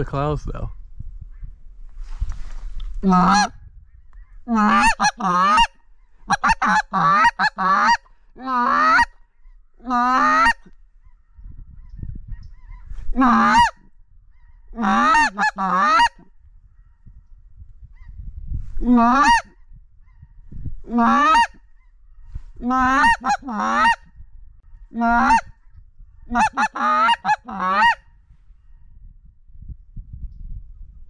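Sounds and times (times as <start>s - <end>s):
geese honking: 3.0s - 3.5s, 4.5s - 9.1s, 9.8s - 10.7s, 12.6s - 16.3s, 18.9s - 19.5s, 20.9s - 21.9s, 22.6s - 24.0s, 25.0s - 25.4s, 26.3s - 28.0s.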